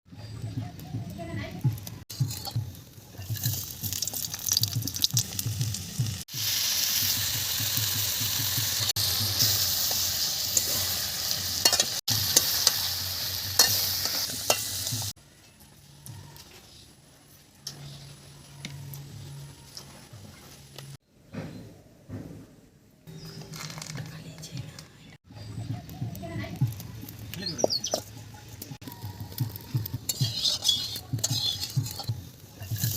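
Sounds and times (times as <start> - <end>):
stirring knocks and scrapes: 1.6 - 5.6, 26.6 - 32.9
food sizzling in a pan: 1.7 - 15.2, 28.8 - 32.9.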